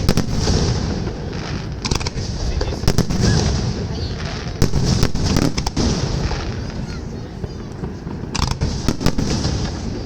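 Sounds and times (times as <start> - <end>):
firework shells bursting: 0.0 - 6.8
distant echoing booms: 0.0 - 10.0.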